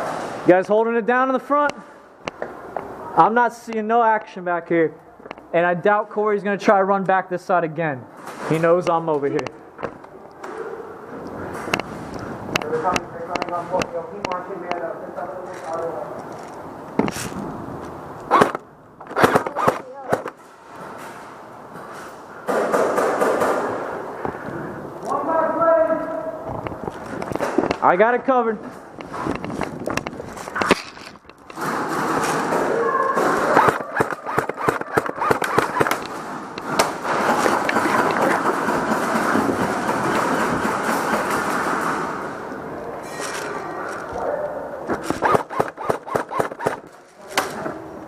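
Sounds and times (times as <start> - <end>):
airsoft guns firing: 18.3 - 20.3, 31.5 - 42.2, 45.0 - 46.9
steady rustling: 28.6 - 42.5.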